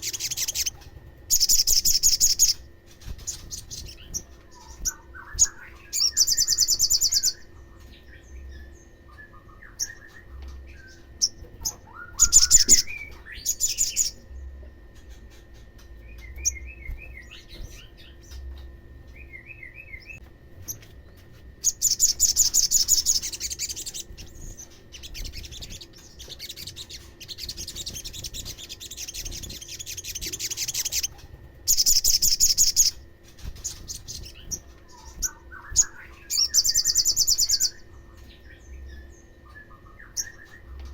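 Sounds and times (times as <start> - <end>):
birds singing buzzy trills: 0.0 - 40.9
soft bird chirping: 0.0 - 40.9.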